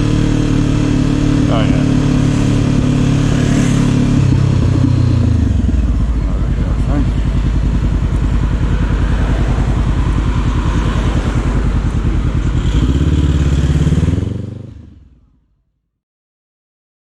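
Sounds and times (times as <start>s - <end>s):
motorcycle engine running: 0.0s - 15.6s.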